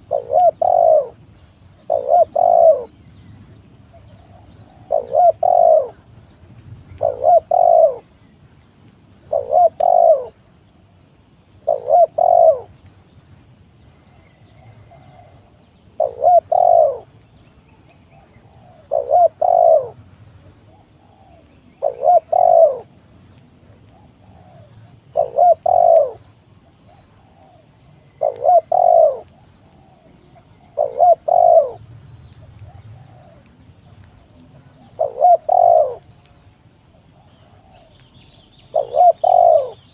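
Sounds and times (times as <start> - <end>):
dove cooing: 0.0 - 3.0, 3.9 - 6.1, 7.0 - 8.1, 9.2 - 10.4, 11.6 - 12.8, 14.1 - 17.2, 18.0 - 20.0, 20.6 - 31.9, 32.6 - 36.1, 37.2 - 38.0, 38.7 - 39.9.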